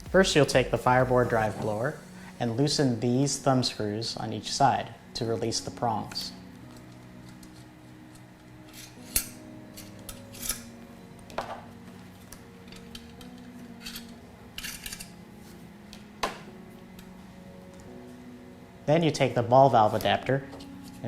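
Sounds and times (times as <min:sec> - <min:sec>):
faint steady hum: 0:00.0 - 0:21.0
metal parts clicking and scraping: 0:06.1 - 0:10.7, 0:12.3 - 0:15.2.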